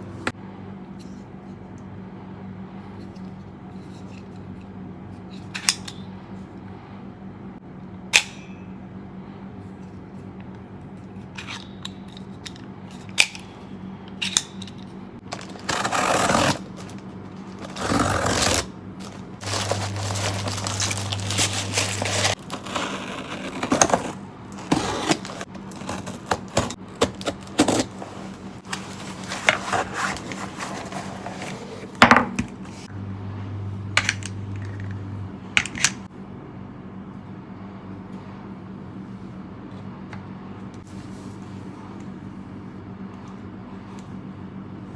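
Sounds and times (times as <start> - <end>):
steady low hum: 0.0 - 44.9
louder low hum: 15.0 - 39.0
scraping and rustling: 15.2 - 32.0.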